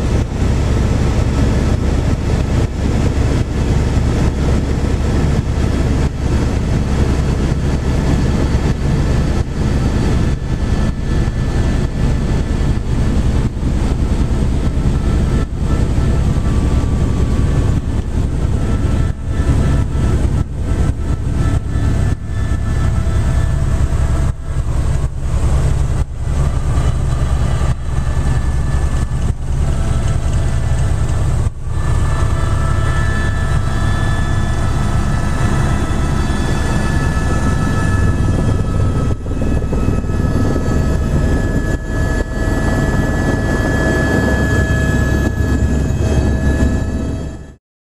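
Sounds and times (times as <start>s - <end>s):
helicopter engine and rotor drone: 0.0s - 47.6s.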